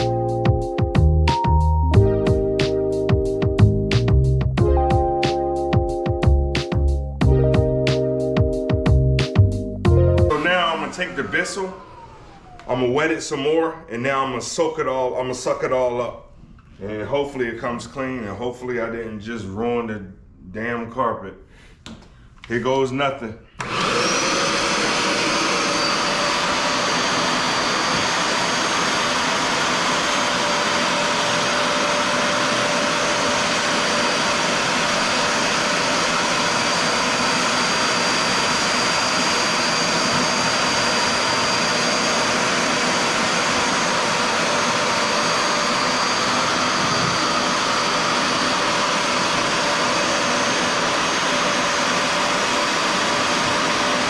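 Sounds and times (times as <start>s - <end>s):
carpet cleaner suction motor whine: 10.3s - 13.2s, 23.6s - 54.0s.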